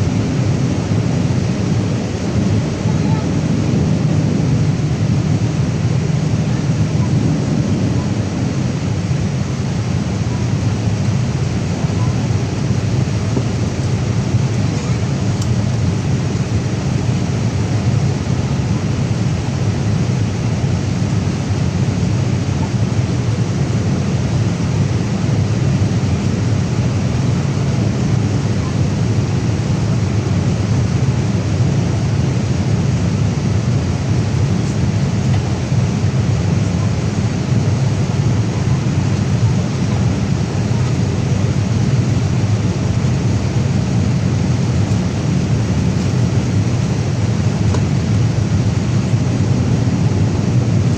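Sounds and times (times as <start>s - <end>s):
aircraft cabin engine rushing: 0.0s - 50.9s.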